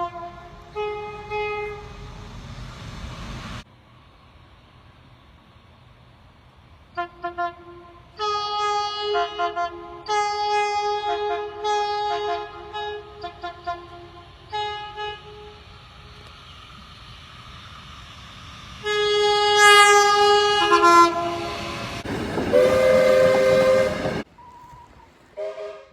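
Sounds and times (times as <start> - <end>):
train air horn chord: 0.0 - 2.2, 6.9 - 16.3, 18.8 - 24.3, 25.4 - 25.9
train rushing past: 0.0 - 25.9.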